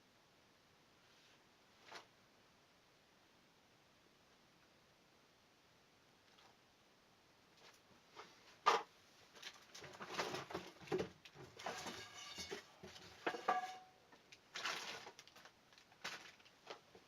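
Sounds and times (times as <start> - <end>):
small parts clicking and scraping: 11.3 - 16.8.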